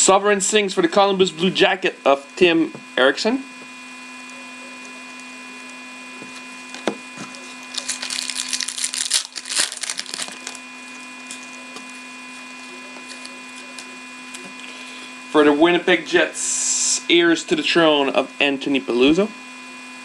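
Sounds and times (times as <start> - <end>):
steady electrical hum: 0.0 - 20.0
cards and wrapper rustling: 7.2 - 10.7, 11.3 - 13.9.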